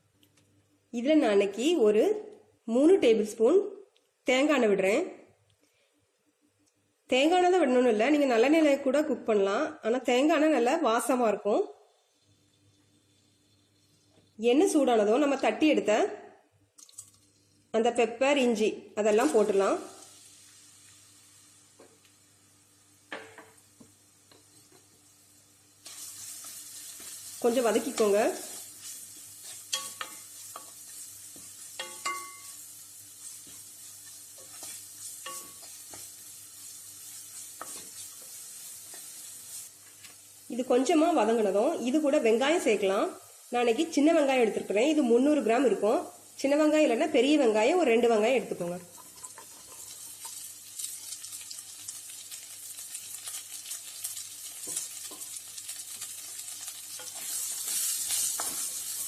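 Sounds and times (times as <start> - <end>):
spices sizzling in hot oil: 11.9 - 15.7, 19.0 - 59.0
spatula scraping pan: 25.8 - 32.6, 33.2 - 39.6, 48.9 - 50.4, 54.6 - 59.0
spatula clinking against pan: 29.7 - 30.7, 31.4 - 32.6, 34.4 - 36.0.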